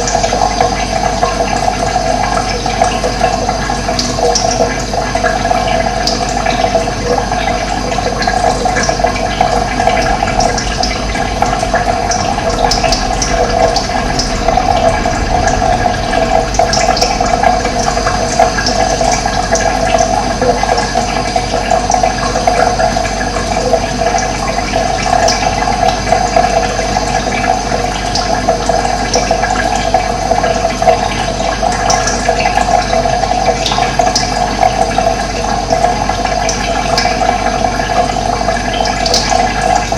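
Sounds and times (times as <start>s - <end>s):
running water splashing: 0.0s - 39.9s.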